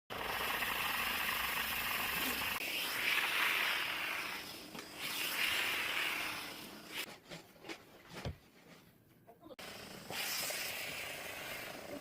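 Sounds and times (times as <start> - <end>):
steam cleaner hissing: 0.5 - 7.1, 10.0 - 12.0.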